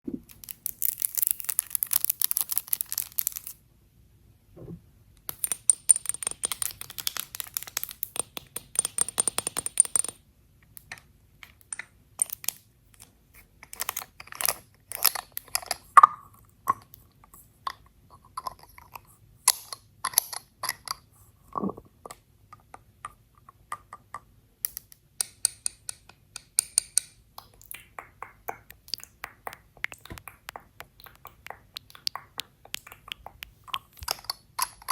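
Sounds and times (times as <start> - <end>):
makeup cases tapped and clicked: 5.3 - 13.1, 22.1 - 34.9.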